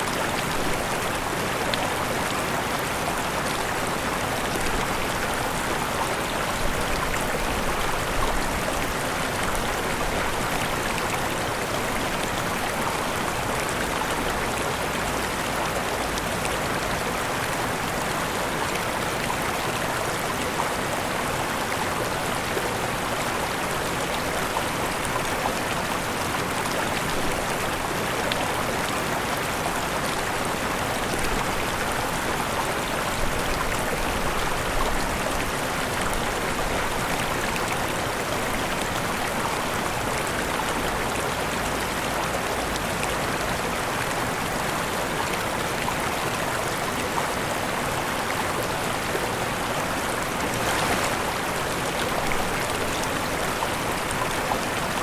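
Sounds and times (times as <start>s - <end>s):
waterfall rushing: 20.1s - 55.0s.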